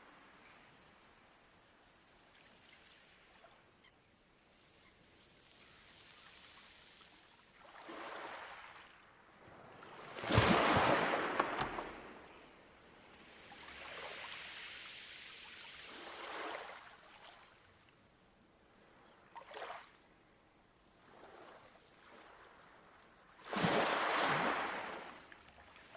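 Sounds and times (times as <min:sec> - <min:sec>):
small waves on pebble beach: 0:04.5 - 0:17.6, 0:21.0 - 0:25.9.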